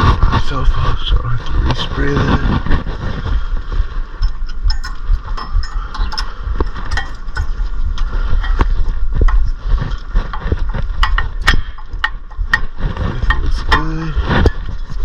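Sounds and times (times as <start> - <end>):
steady low rumble: 0.0 - 15.0
tools clicking and tapping: 4.2 - 14.7.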